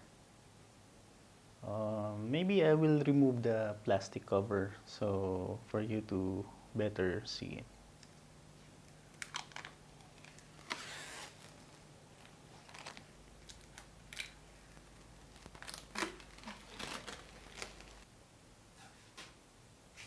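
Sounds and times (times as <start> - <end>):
plastic film peeling and crinkling: 9.1 - 18.1.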